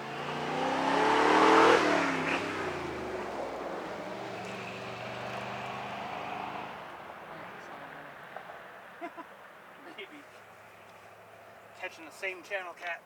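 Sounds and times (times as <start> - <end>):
vehicle driving past: 0.0 - 8.6.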